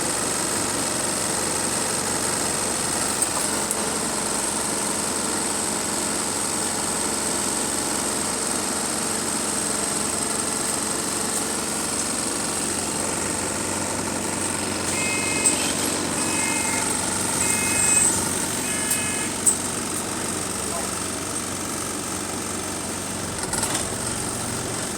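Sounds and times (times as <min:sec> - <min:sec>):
diesel engine idling with rattle: 0:00.0 - 0:24.9
short beeping signal: 0:14.7 - 0:19.7.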